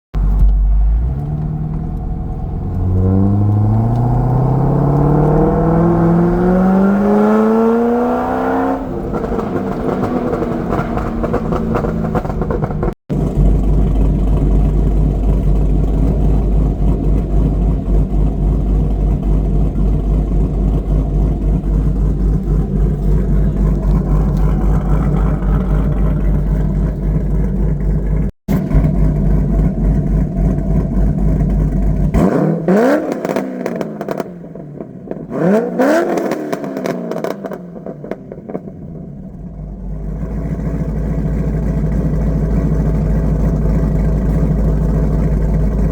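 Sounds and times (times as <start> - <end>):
exhaust pops crackling: 0.2 - 6.4, 9.0 - 35.3
car engine accelerating: 0.2 - 45.9.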